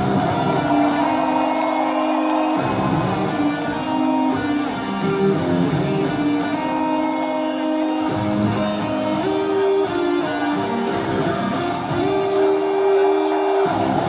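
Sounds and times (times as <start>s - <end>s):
distorted electric guitars: 0.0s - 14.0s
metal band playing live: 0.0s - 14.0s.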